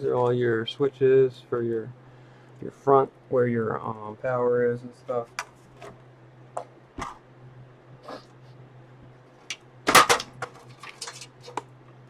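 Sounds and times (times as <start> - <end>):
low fan hum: 0.0 - 12.0
plastic clatter: 9.9 - 11.7.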